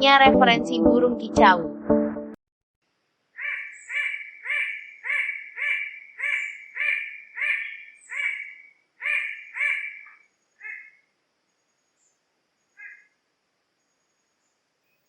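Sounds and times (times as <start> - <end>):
bird calling loudly: 3.4 - 11.0.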